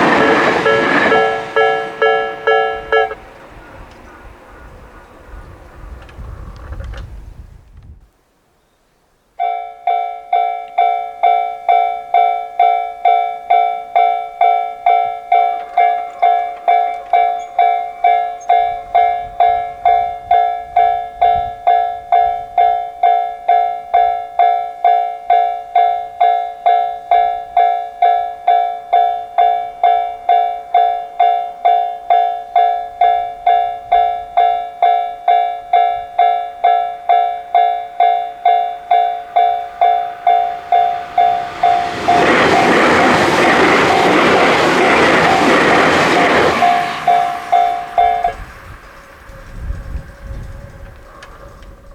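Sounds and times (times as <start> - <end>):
electronic crossing bells: 0.0 - 3.2, 9.4 - 50.4.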